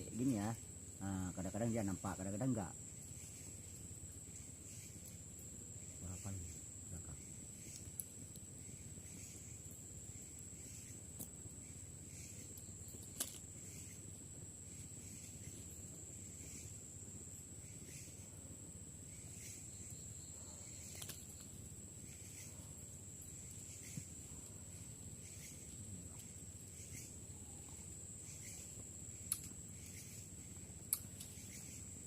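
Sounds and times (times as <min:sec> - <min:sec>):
insects trilling: 0:00.0 - 0:32.0
soft insect chirp: 0:00.0 - 0:32.0
sharp clicks: 0:29.3 - 0:29.6.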